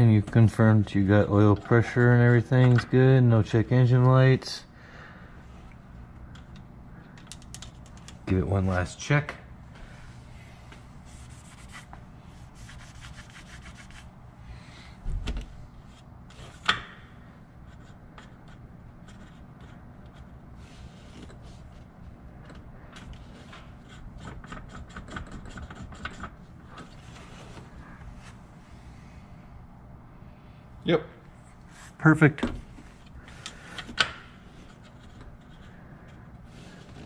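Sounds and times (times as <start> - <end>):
rubbing and scraping strokes: 11.0 - 14.1.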